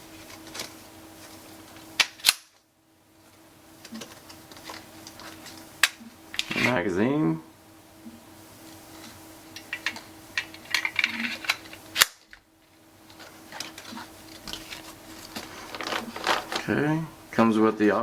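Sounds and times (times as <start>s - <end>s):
packaging rustling: 0.1s - 1.9s, 3.8s - 5.7s, 13.1s - 16.7s.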